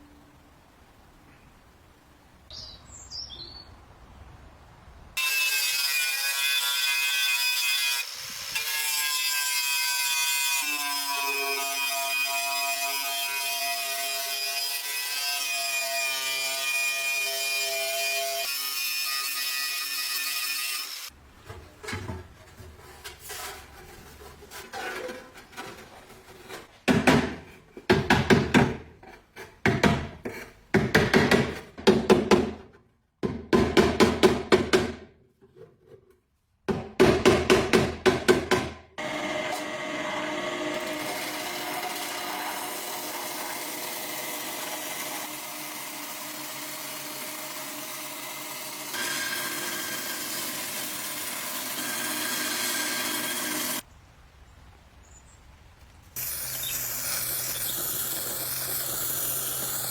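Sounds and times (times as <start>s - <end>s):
hand tool scraping: 20.5s - 27.9s, 28.8s - 30.7s, 56.2s - 59.9s
power tool running: 39.0s - 53.8s, 56.2s - 59.9s.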